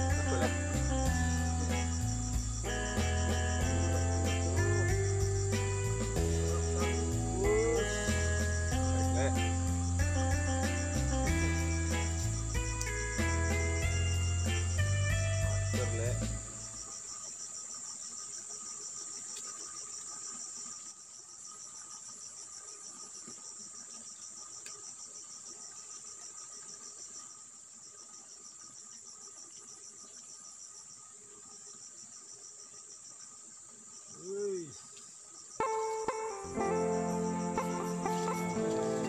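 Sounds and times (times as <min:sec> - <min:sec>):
background music: 0:00.0 - 0:16.7, 0:35.6 - 0:39.0
insects trilling: 0:00.0 - 0:39.0.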